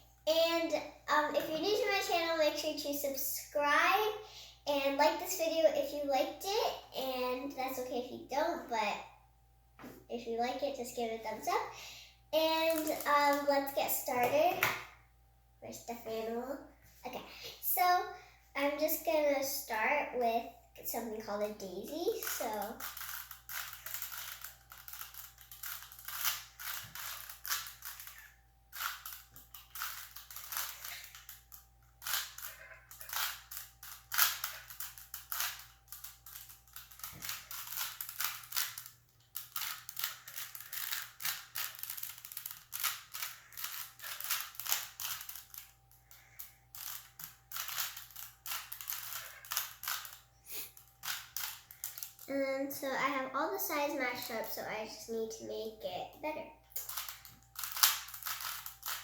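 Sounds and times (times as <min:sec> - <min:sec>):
puzzle cube clicking and rattling: 0:22.2 - 0:52.3, 0:56.8 - 0:59.0.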